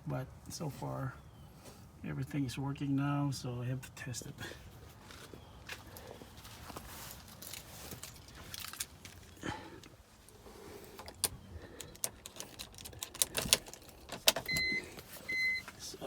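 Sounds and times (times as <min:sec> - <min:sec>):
car warning chime beeping: 0:14.5 - 0:15.7.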